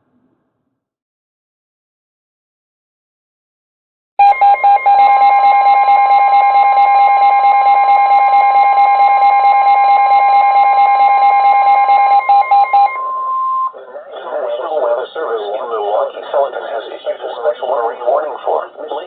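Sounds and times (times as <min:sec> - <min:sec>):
fast pulsing alarm beep: 0:04.2 - 0:13.8
steady warning tone: 0:04.2 - 0:19.0.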